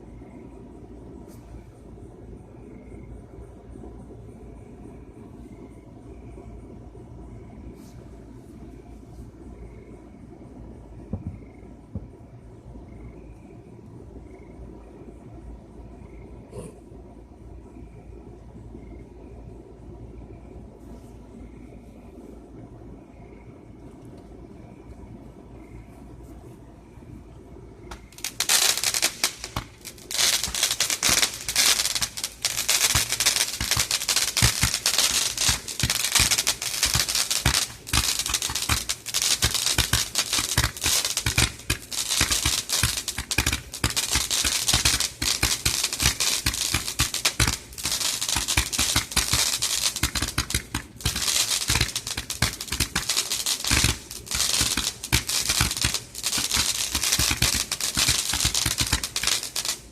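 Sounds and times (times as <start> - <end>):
fireworks pops and crackles: 11.0 - 12.2, 27.9 - 59.9.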